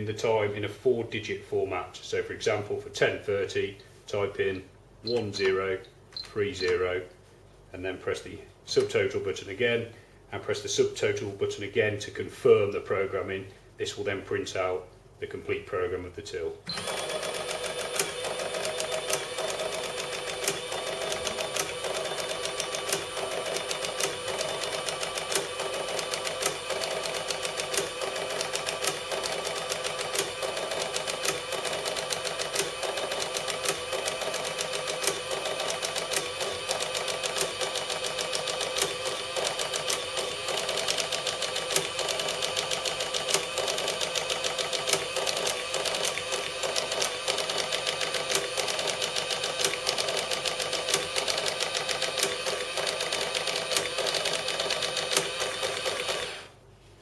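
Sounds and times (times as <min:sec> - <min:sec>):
receipt printer printing: 0:16.7 - 0:56.6.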